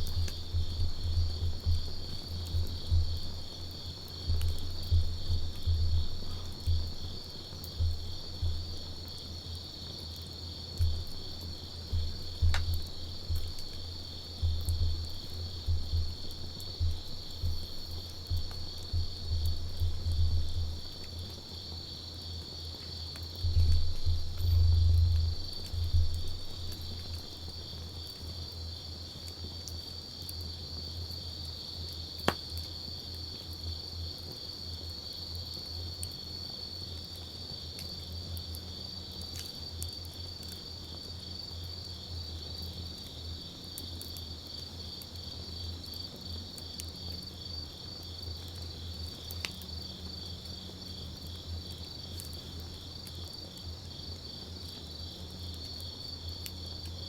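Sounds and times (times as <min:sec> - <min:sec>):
low steady hum: 0:00.0 - 0:22.0, 0:23.2 - 0:28.3
campfire crackling and popping: 0:00.0 - 0:34.9, 0:35.6 - 0:57.0
crickets trilling: 0:00.0 - 0:57.0.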